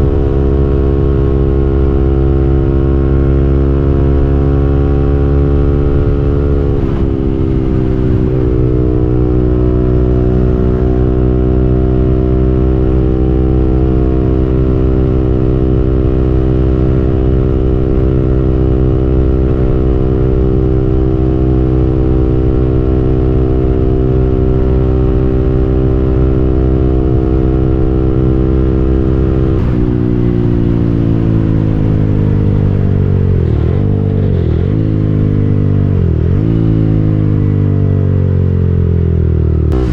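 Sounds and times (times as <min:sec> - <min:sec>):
motorcycle engine running: 0:00.0 - 0:39.9
wind rush: 0:05.7 - 0:11.0.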